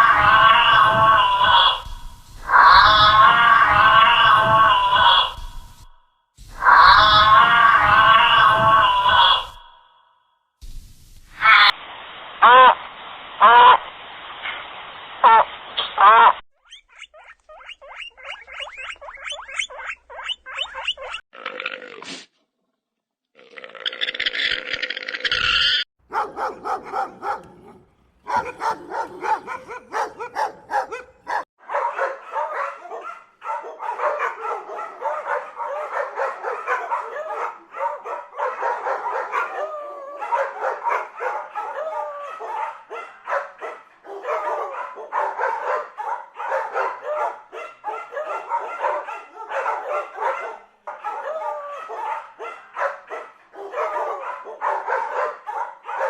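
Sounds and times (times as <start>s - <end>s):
dog barking and yipping: 16.8s - 21.2s, 26.0s - 56.0s.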